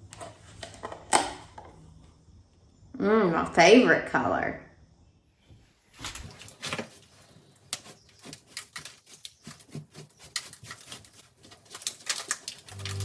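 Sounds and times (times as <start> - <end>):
hand tool scraping plaster wall: 6.5 - 12.7.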